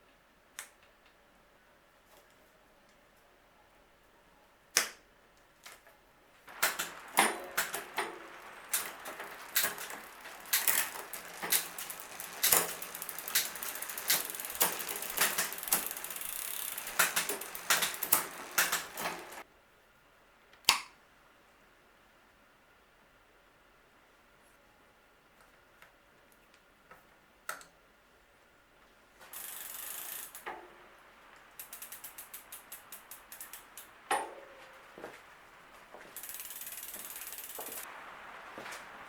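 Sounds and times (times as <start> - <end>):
rapid ratcheting clicks: 6.5 - 19.4, 29.3 - 30.5, 31.5 - 34.0, 36.2 - 37.9.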